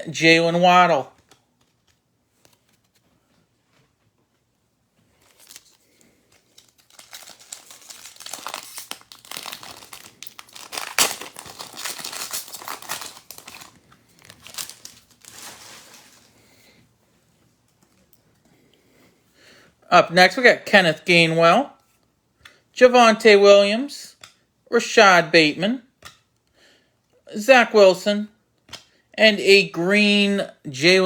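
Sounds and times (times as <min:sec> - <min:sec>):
wrapper tearing and crinkling: 0:05.2 - 0:16.3
wrapper sharp snap: 0:06.6 - 0:15.1.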